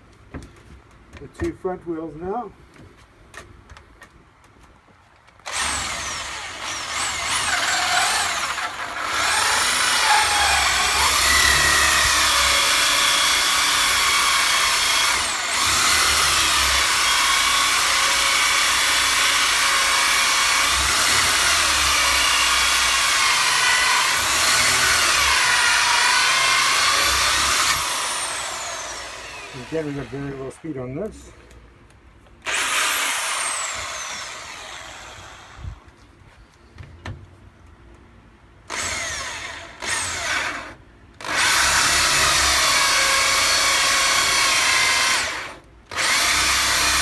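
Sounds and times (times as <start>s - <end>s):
power drill whining on wood: 5.4s - 30.6s, 32.4s - 35.8s, 38.7s - 47.0s.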